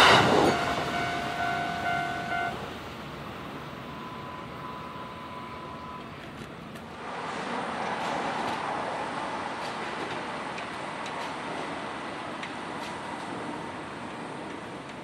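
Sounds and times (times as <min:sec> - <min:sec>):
level crossing bell ringing: 0:00.0 - 0:02.6
train wheel and rail noise: 0:00.0 - 0:15.0.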